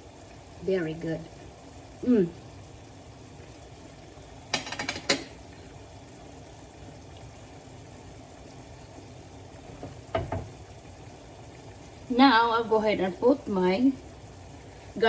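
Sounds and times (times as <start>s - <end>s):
food simmering in a pan: 0.0s - 15.0s
utensil clinking against pan: 4.5s - 5.4s.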